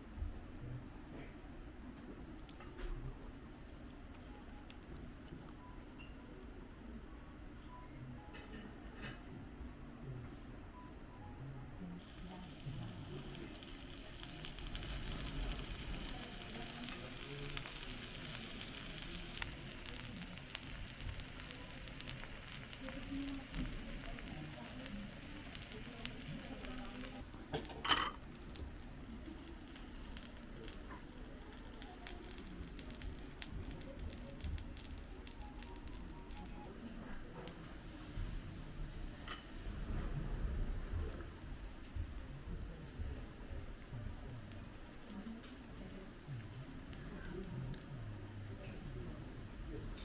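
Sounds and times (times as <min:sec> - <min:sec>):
food sizzling over charcoal: 0:12.0 - 0:50.0.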